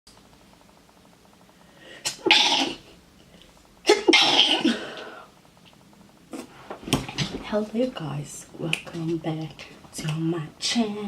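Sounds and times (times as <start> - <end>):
person sneezing: 2.0 - 2.8.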